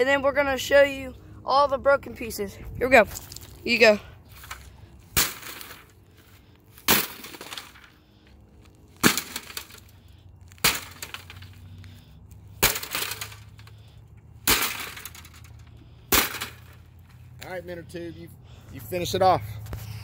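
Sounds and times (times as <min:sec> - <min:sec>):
sledgehammer smashing tv: 0:06.8 - 0:07.7, 0:09.0 - 0:09.8, 0:10.6 - 0:11.4, 0:12.6 - 0:13.4, 0:14.4 - 0:15.4, 0:16.1 - 0:16.8
breaking pieces crackling: 0:08.9 - 0:11.6, 0:12.6 - 0:13.7, 0:14.5 - 0:16.8.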